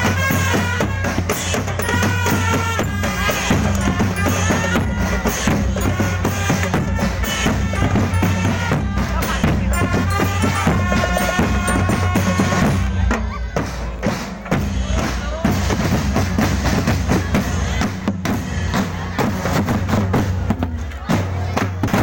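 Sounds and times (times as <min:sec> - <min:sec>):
loud music with fast drum beat: 0:00.0 - 0:22.0.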